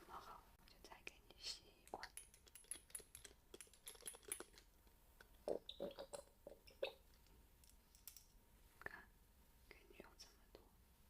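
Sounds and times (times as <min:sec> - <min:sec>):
soft clicks and crackles: 0:00.1 - 0:09.1.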